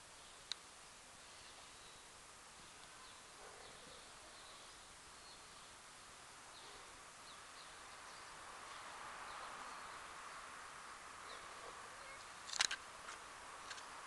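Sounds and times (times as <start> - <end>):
faint outdoor background noise: 0.0 - 14.0
sharp click: 12.5 - 12.8.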